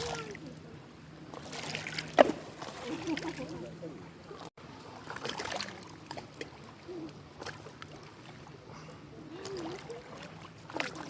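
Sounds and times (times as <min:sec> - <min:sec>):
faint distant voices: 0:00.0 - 0:11.0
small waves lapping on shore: 0:00.0 - 0:11.0.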